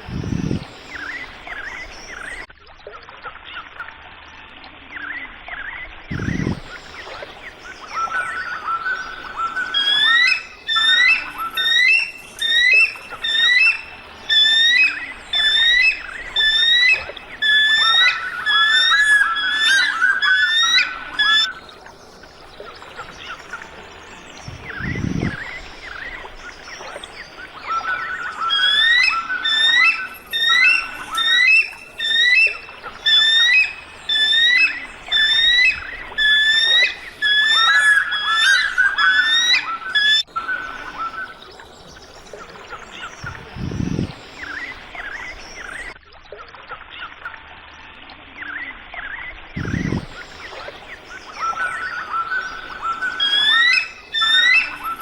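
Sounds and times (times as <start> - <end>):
eagle calling: 6.1 - 7.1, 7.7 - 21.7, 24.4 - 41.5, 42.8 - 46.0, 49.6 - 55.0.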